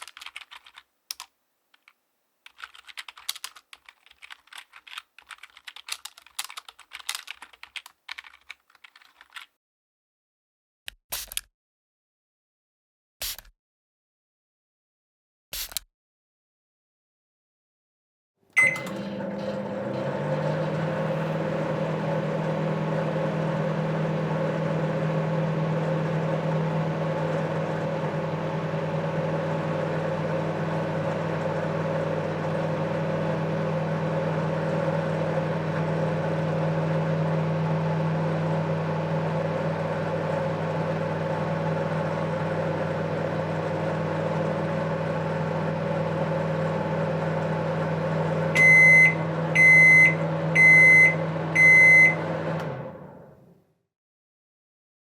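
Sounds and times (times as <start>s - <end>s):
microwave beep: 18.6s - 43.8s, 44.6s - 53.2s
microwave oven humming: 18.6s - 53.6s.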